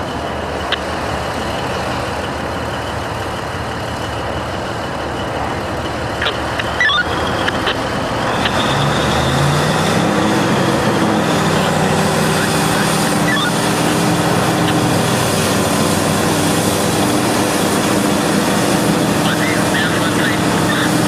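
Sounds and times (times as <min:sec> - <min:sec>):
heavy vehicle engine running: 0:00.0 - 0:21.0
high-pitched whine: 0:00.0 - 0:21.0.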